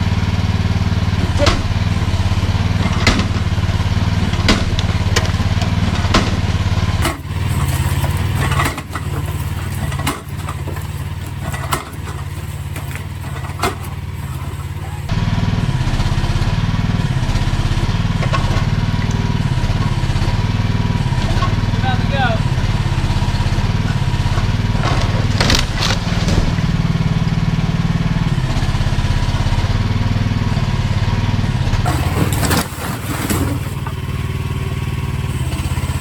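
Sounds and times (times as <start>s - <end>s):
small excavator engine running: 0.0s - 36.0s
bucket knocking on block wall: 7.0s - 15.1s.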